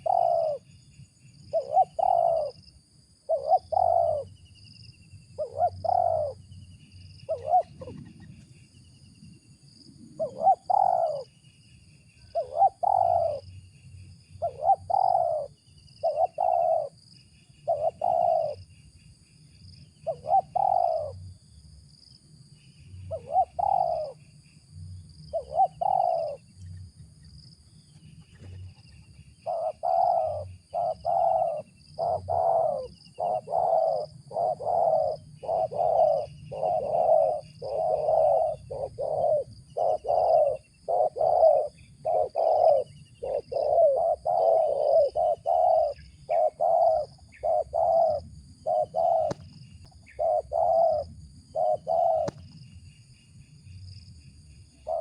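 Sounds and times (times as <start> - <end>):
dove cooing: 0.0 - 0.7, 1.5 - 2.6, 3.2 - 4.4, 5.3 - 6.6, 7.2 - 8.4, 10.0 - 11.3, 12.2 - 13.6, 14.3 - 17.0, 17.6 - 18.7, 20.0 - 21.3, 23.1 - 24.2, 25.3 - 26.6, 28.3 - 52.5, 54.8 - 55.0.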